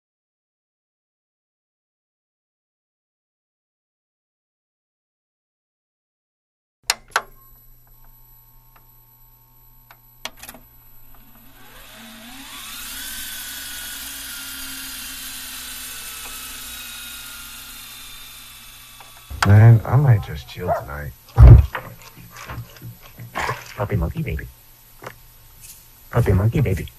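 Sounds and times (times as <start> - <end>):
small motor whirring: 11.0 - 19.4.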